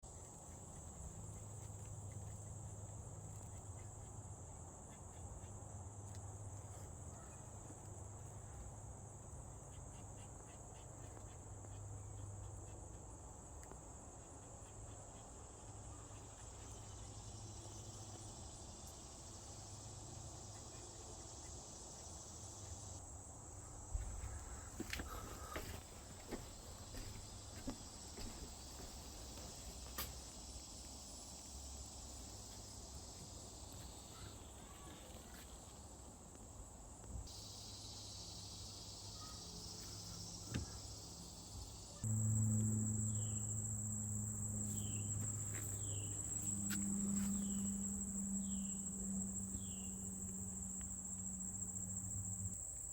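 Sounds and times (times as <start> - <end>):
crickets trilling: 0.0 - 52.9.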